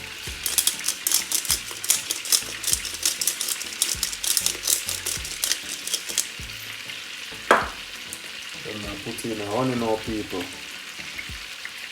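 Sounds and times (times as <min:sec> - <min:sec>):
pepper grinder grinding: 0:00.0 - 0:08.3.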